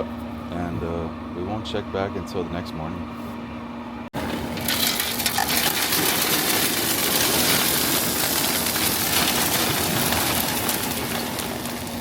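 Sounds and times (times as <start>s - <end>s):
pellets pouring and rattling: 4.4s - 12.0s.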